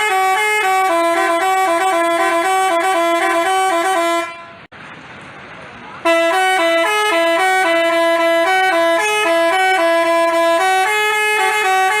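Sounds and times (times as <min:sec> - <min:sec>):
musical horn playing a tune: 0:00.0 - 0:04.7, 0:06.0 - 0:12.0.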